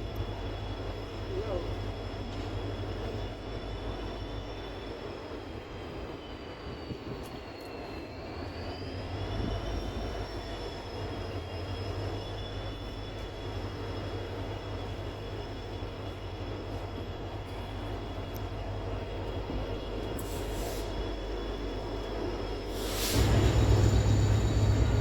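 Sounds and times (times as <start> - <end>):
passenger train rumbling: 0.0 - 25.0
high whine: 23.1 - 25.0.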